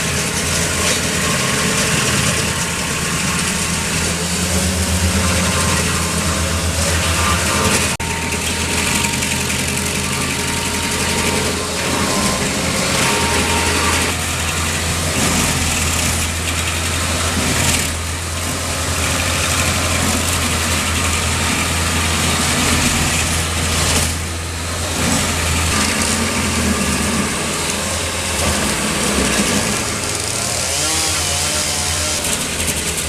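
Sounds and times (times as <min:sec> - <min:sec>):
cutting wheel grinding wood: 0:00.0 - 0:33.0
engine low drone: 0:00.0 - 0:33.0.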